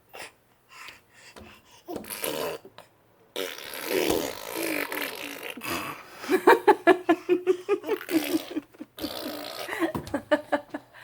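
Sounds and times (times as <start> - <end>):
child blowing raspberries: 3.4 - 6.1.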